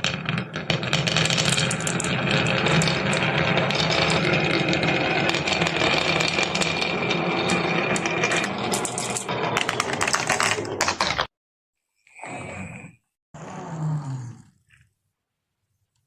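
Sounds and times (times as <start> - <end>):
marbles clattering down a run: 0.0 - 11.2.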